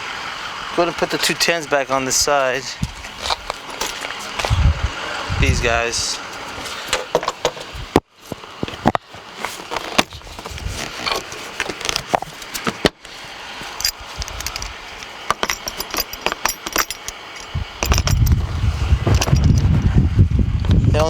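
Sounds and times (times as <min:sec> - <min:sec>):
low rumble: 0:17.4 - 0:21.0.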